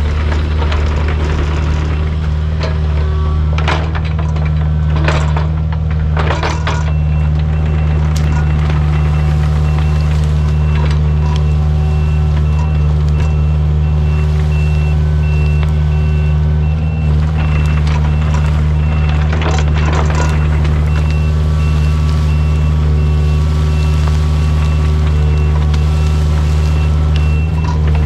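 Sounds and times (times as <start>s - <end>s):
crunching clatter of debris: 0.0s - 28.0s
excavator diesel engine running: 0.0s - 28.0s
travel alarm beeping: 6.9s - 28.0s.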